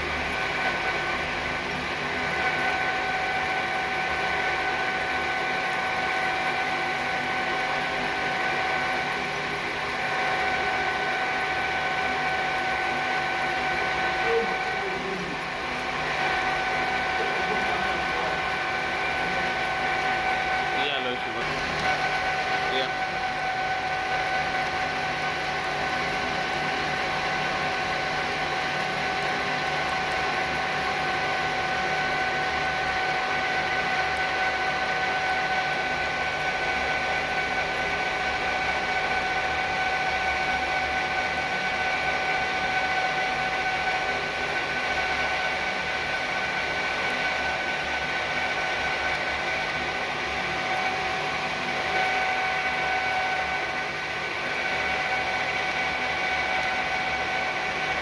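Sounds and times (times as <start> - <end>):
machine tool running with whine: 0.0 - 58.0.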